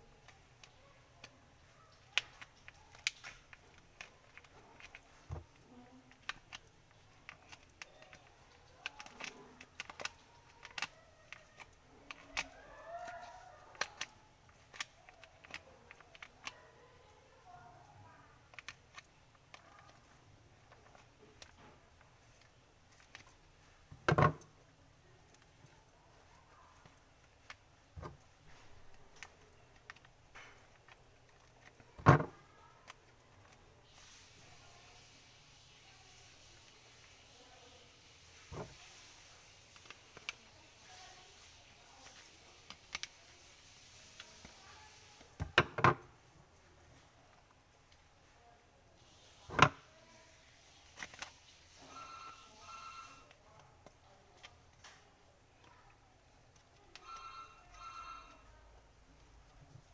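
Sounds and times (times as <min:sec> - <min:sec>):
small hard parts clicking: 0:00.1 - 0:16.7, 0:18.4 - 0:24.7.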